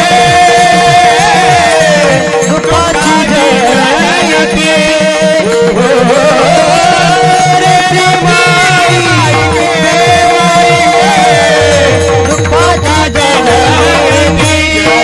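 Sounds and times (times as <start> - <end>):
hand drum beat: 0.0 - 15.0
harmonium drone: 0.0 - 15.0
man singing devotional melody: 0.0 - 15.0.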